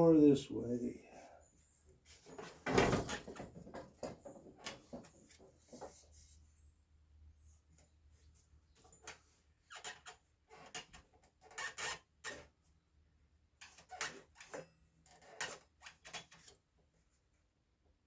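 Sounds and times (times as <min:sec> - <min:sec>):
knocks and clicks handling wood and tools: 0:02.2 - 0:06.0.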